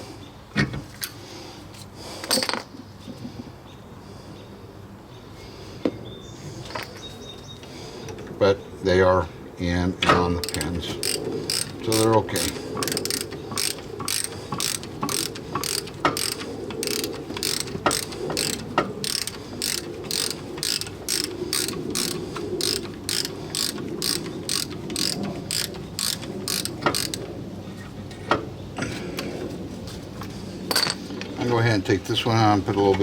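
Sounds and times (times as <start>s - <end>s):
ratchet wrench clicking: 10.4s - 27.2s.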